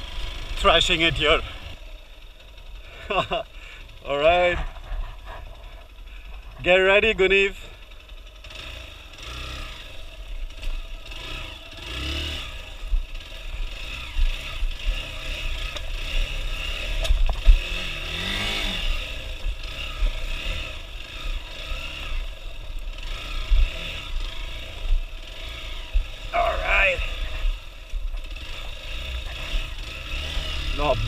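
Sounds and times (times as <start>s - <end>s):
motorcycle engine revving: 0.0s - 31.0s.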